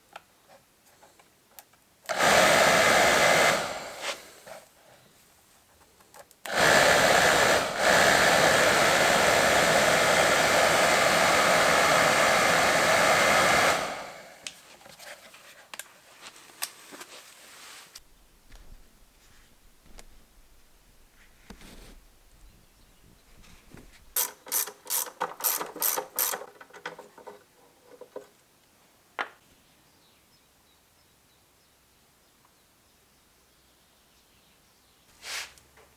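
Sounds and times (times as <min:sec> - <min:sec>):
air blower rushing: 0:02.1 - 0:04.6, 0:06.5 - 0:14.4.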